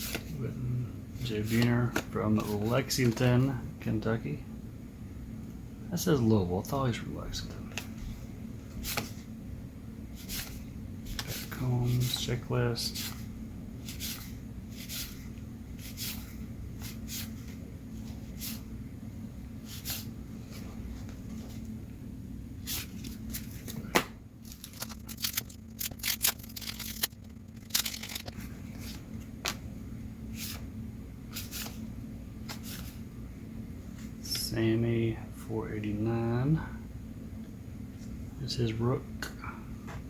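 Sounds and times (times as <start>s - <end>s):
paper cards flicking and rustling: 0.0s - 0.4s, 1.4s - 3.3s, 7.6s - 9.2s, 10.2s - 15.2s, 22.6s - 29.7s, 30.4s - 30.7s, 31.3s - 31.8s, 32.4s - 33.0s
steady low hum: 0.0s - 40.0s.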